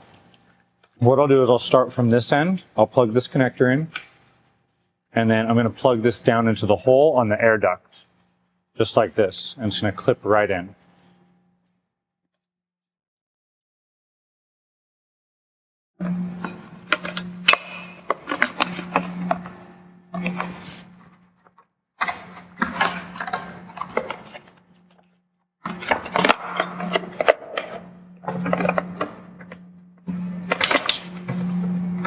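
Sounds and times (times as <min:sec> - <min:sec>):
steady low hum: 0:16.0 - 0:25.1, 0:25.7 - 0:32.0.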